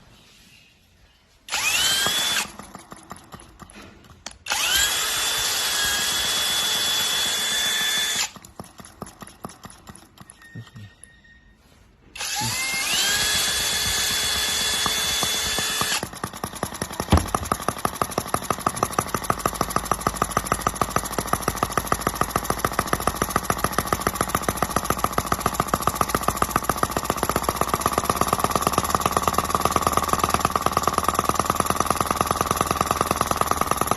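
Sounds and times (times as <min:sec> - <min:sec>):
electric starter whine: 0:01.4 - 0:33.9
model engine running: 0:01.5 - 0:10.7, 0:12.2 - 0:33.9.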